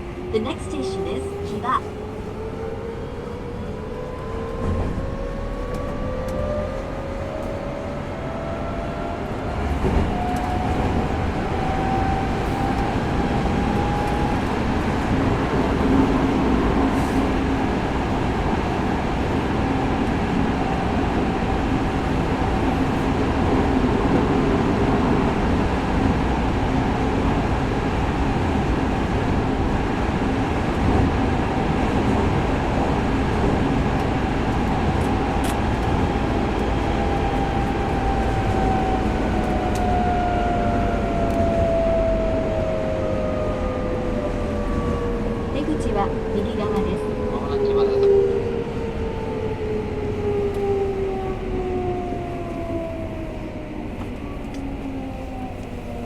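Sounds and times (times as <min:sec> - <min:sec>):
train rumbling on rails: 0:00.0 - 0:56.0.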